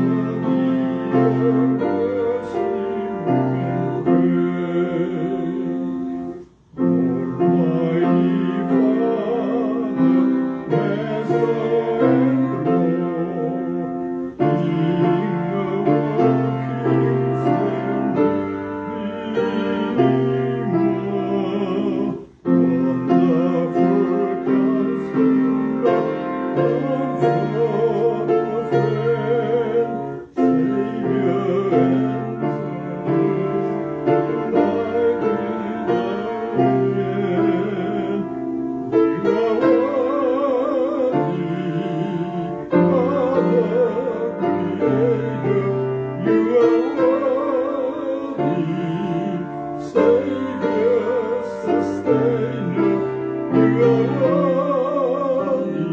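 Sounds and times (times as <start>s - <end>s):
person singing with vibrato: 0.0s - 55.9s
piano accompaniment: 0.0s - 55.9s.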